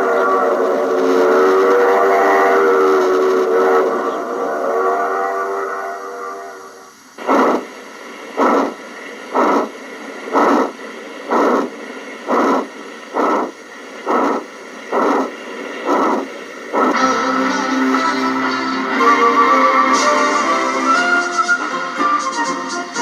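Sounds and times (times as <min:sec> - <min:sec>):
steam locomotive chuffs: 0:00.0 - 0:23.0
held multi-note tone: 0:16.9 - 0:22.2.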